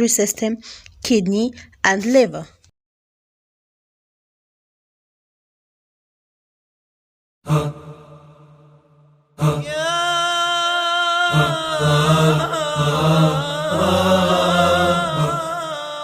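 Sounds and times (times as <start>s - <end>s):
wavering chant-like voice: 7.5s - 8.8s, 9.4s - 16.0s.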